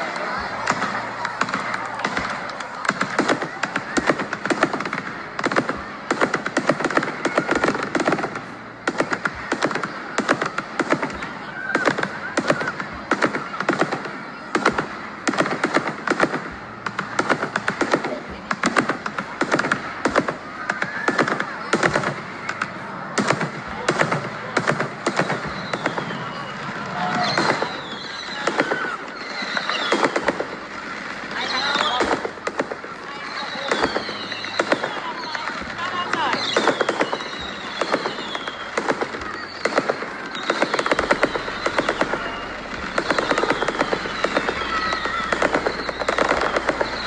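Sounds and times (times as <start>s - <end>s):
fireworks cracking and popping: 0.0s - 47.0s
falling firework whistles: 25.0s - 47.0s.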